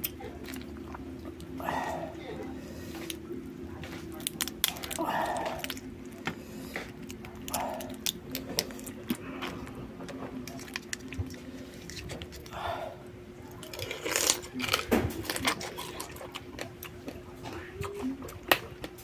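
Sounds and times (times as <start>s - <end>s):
wet chewing and mouth clicks: 0.0s - 1.6s, 2.9s - 9.7s, 10.4s - 12.6s, 13.5s - 19.0s
steady low hum: 0.0s - 19.0s
crunching: 3.8s - 12.6s, 13.5s - 17.2s.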